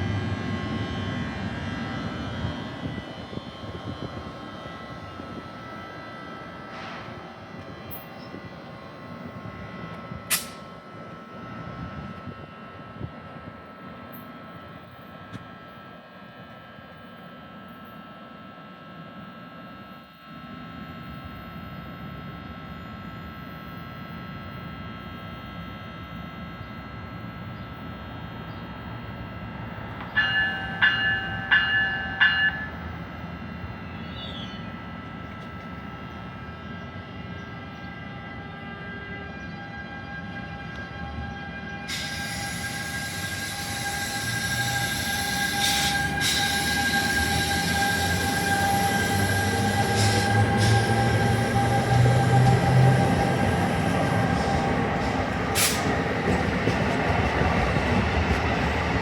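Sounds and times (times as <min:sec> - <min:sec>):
train rumbling: 0:00.0 - 0:16.4, 0:26.0 - 0:59.0
train horn short blasts: 0:38.2 - 0:52.9.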